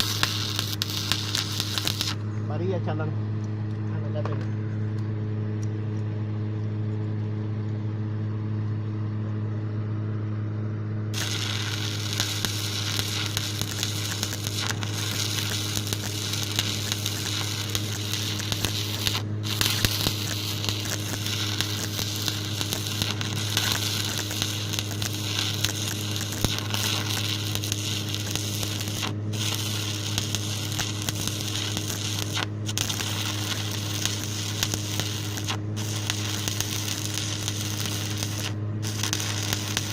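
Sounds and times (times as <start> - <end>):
welding arc crackling sizzle: 0.0 - 2.2, 11.1 - 39.9
steady low hum: 0.0 - 39.9.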